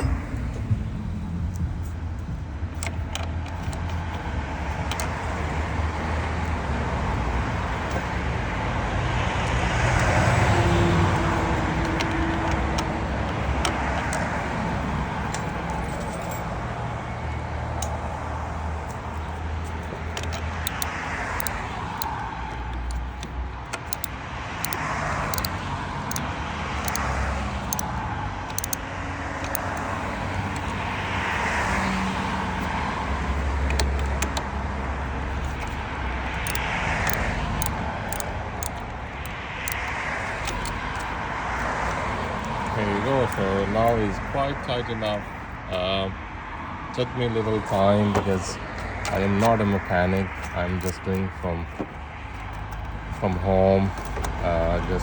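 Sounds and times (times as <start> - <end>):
metal tool clinking: 0.0 - 0.5, 11.2 - 16.6, 18.8 - 31.9, 35.3 - 44.0
road traffic passing: 0.0 - 55.0.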